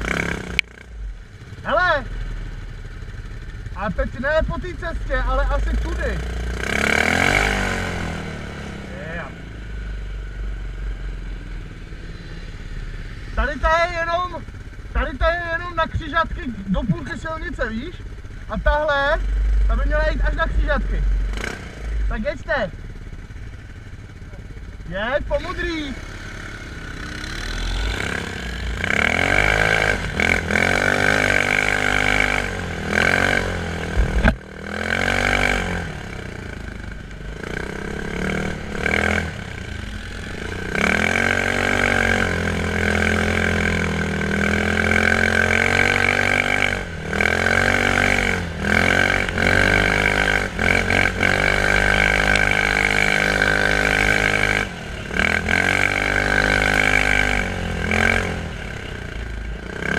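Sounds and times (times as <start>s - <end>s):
quad bike engine revving: 0.0s - 59.9s
steady high whine: 16.0s - 30.6s, 31.2s - 44.2s.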